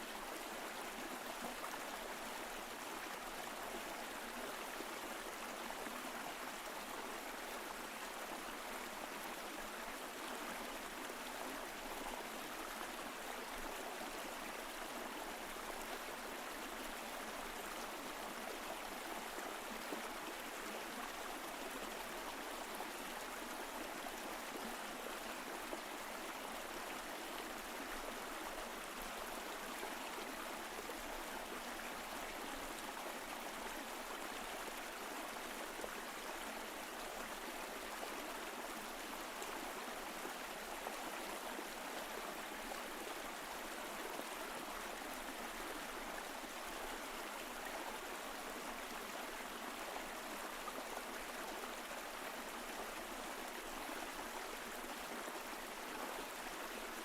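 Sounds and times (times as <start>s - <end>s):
mountain stream flowing: 0.0s - 57.0s.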